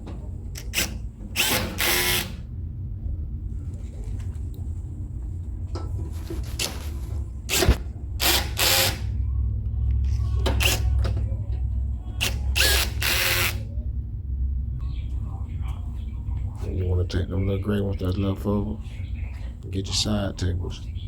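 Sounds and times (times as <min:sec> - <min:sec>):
power drill driving screws into metal: 0:00.6 - 0:02.4, 0:07.5 - 0:09.1, 0:12.2 - 0:13.6.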